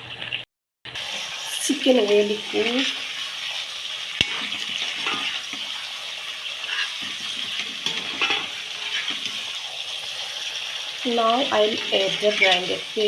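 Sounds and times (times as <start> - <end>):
chicken sizzling in a pan: 0.0 - 13.0
soft scrapes against pan: 4.2 - 5.7, 6.6 - 12.9.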